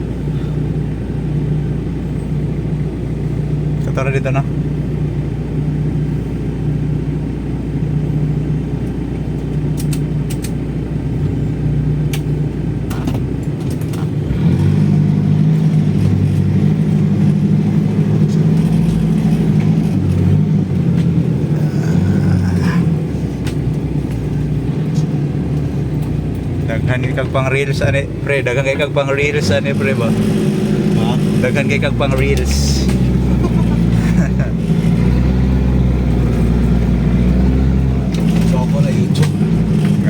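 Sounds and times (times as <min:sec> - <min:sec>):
engine pulling under load: 0:09.4 - 0:40.0.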